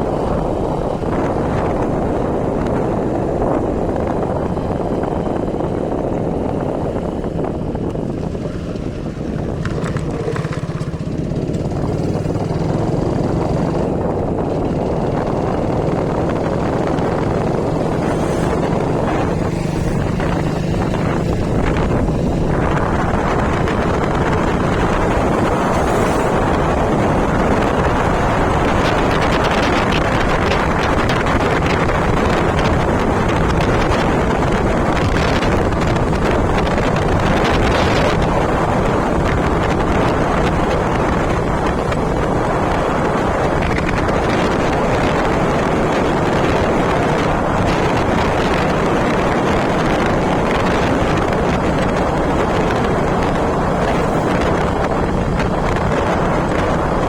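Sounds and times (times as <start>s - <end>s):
low engine hum: 0.0s - 57.0s
wind rushing over microphone: 0.0s - 57.0s.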